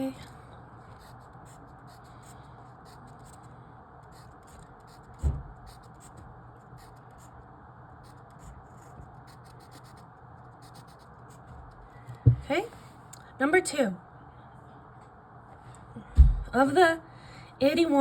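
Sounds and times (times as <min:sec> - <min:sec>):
faint steady hum: 0:00.0 - 0:18.0
pen scratching on paper: 0:00.8 - 0:07.4, 0:08.0 - 0:11.8
low thump: 0:05.2 - 0:05.5, 0:12.2 - 0:12.5, 0:16.2 - 0:16.6.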